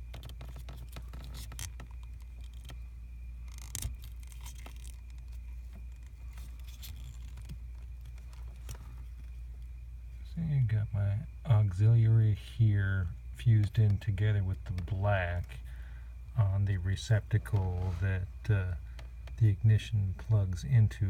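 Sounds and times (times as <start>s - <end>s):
faint clicks and rattles: 0.0s - 9.8s, 13.4s - 21.0s
steady low hum: 0.0s - 21.0s.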